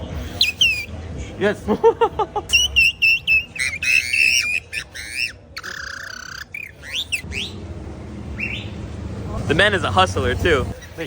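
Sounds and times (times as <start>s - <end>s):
bird-call whistle chirps and trills: 0.2s - 0.9s, 2.5s - 7.6s, 8.3s - 8.8s.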